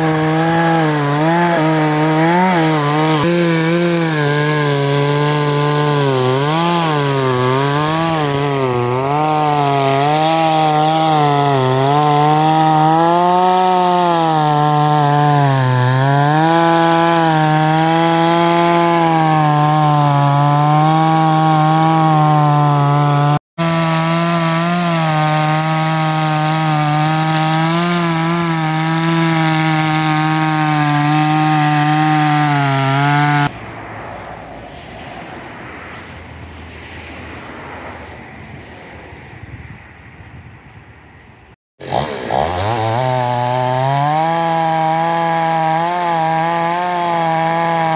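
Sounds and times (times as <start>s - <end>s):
chainsaw cutting log: 0.0s - 33.6s, 41.8s - 47.9s
outdoor noise: 33.4s - 41.6s.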